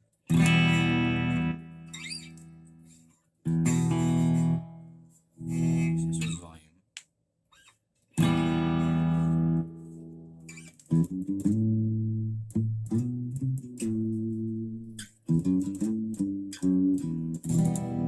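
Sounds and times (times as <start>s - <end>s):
electric guitar picked notes: 0.3s - 2.6s, 8.2s - 18.0s.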